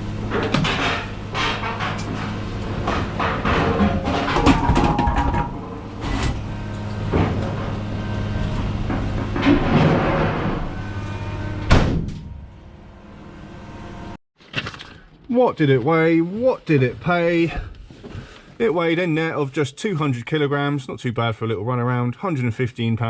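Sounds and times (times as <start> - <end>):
clunks and rattles: 0.0 - 12.6
low hum: 0.0 - 14.2
loud knock: 11.7 - 12.4.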